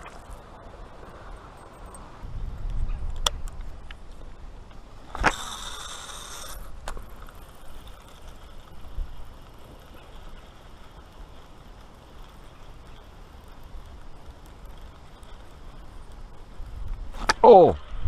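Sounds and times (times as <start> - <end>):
reel spool whirring: 5.0 - 16.6
reel click: 5.1 - 8.7.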